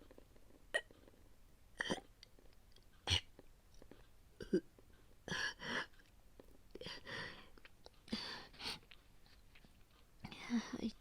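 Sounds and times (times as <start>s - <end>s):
woman retching and gagging: 0.7s - 1.0s, 1.8s - 2.3s, 4.4s - 4.7s.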